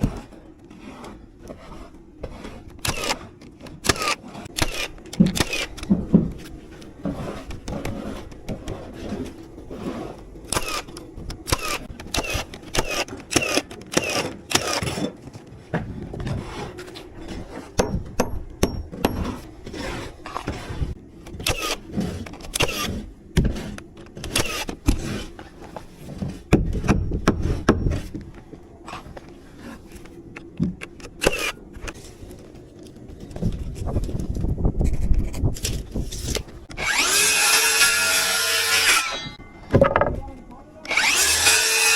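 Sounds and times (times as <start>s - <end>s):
scraping: 0.0s - 13.3s.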